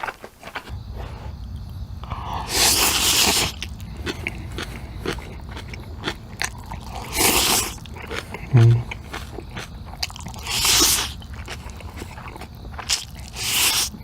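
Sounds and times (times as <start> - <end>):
wet chewing and lip-smacking: 2.6 - 14.0.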